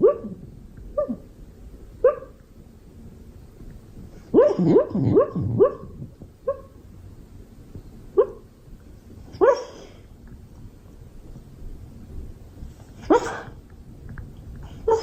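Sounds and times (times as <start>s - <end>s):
dog barking: 0.0s - 1.3s, 2.0s - 2.4s, 4.3s - 6.8s, 8.2s - 8.5s, 9.4s - 9.9s, 13.0s - 13.6s.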